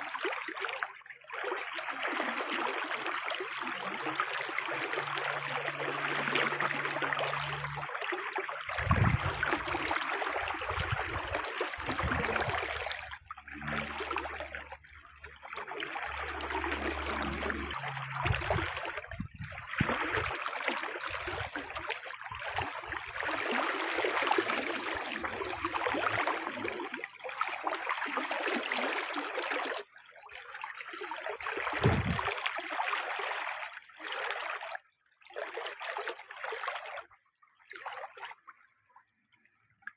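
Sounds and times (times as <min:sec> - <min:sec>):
running water rushing: 0:01.8 - 0:29.7, 0:31.1 - 0:33.6.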